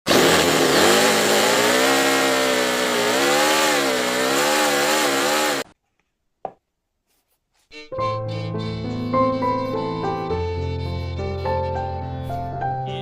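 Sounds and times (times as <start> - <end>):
motor buzzing with wavering pitch: 0.1 - 5.7.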